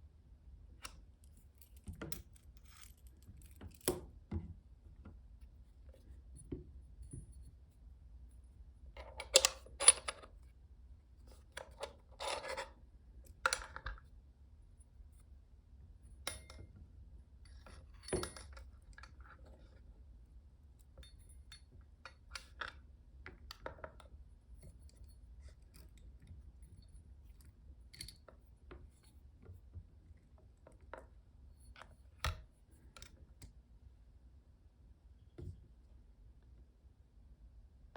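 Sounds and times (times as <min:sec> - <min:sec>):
small metal parts clinking: 0:01.2 - 0:04.0.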